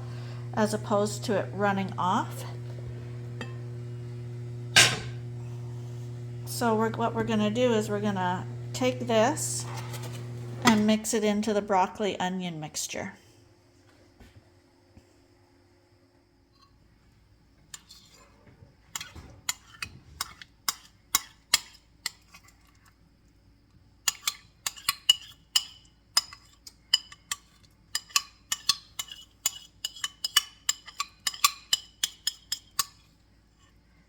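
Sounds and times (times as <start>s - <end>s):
spoon clinking and scraping dish: 3.3s - 3.8s, 4.8s - 5.2s, 18.9s - 22.5s, 24.1s - 33.1s.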